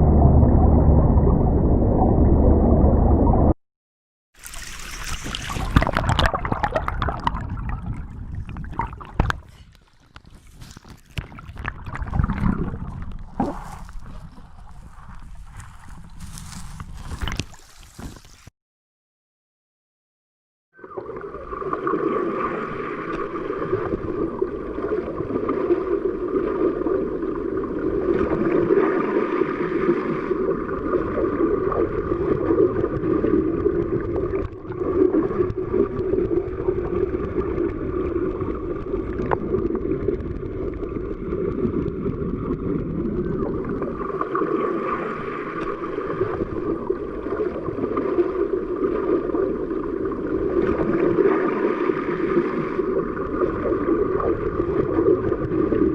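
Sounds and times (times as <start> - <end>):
muffled underwater rush with gurgling: 0.0 - 3.6, 4.4 - 16.7, 20.8 - 55.9.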